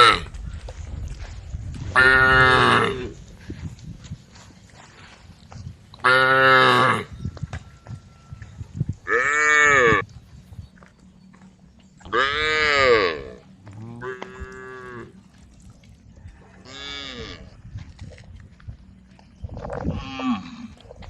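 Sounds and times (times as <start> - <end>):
cows mooing: 1.9 - 3.2, 6.0 - 10.2, 12.0 - 15.5, 16.4 - 17.6, 19.5 - 21.0.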